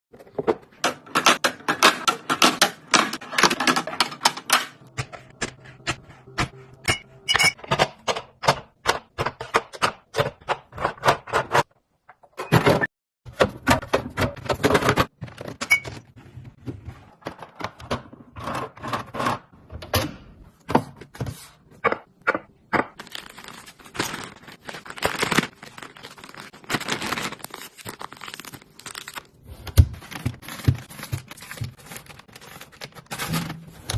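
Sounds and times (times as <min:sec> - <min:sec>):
plastic boxes clicking and scraping: 0:00.2 - 0:05.6, 0:12.4 - 0:19.9, 0:23.1 - 0:33.9.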